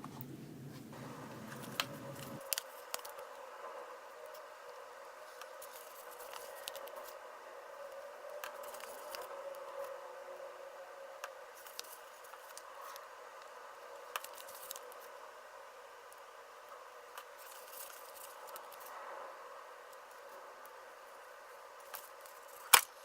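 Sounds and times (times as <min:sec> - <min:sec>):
faint steady hum: 0:00.0 - 0:23.0
stickers peeling and pressing: 0:00.1 - 0:03.2.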